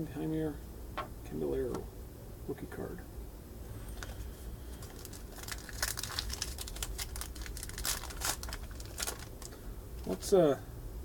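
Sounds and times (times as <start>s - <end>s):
card pack wrapper crinkling: 4.8s - 10.2s.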